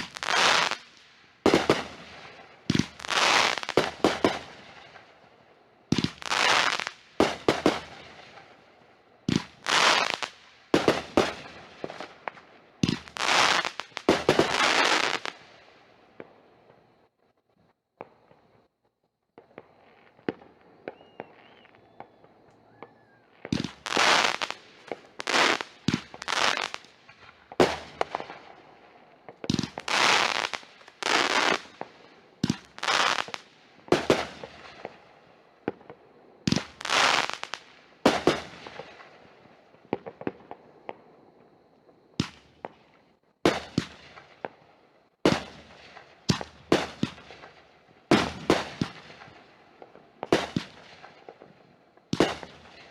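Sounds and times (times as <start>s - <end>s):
sharp firework cracks: 0.0s - 5.0s, 5.9s - 8.5s, 9.3s - 15.4s, 23.4s - 28.5s, 29.3s - 35.0s, 35.8s - 39.2s, 42.2s - 42.8s, 45.2s - 49.4s, 50.2s - 51.3s, 52.1s - 52.8s
fireworks bursting: 0.0s - 16.8s, 19.4s - 41.0s, 42.2s - 44.6s, 45.2s - 51.5s, 52.1s - 52.9s
crackling pops: 9.3s - 15.4s, 19.4s - 28.4s, 29.3s - 35.0s.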